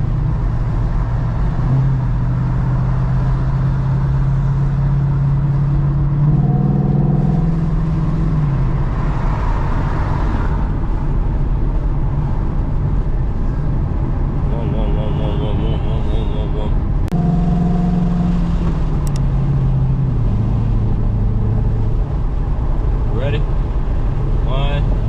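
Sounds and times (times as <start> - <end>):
car engine exhaust drone and rev: 0.0 - 25.0.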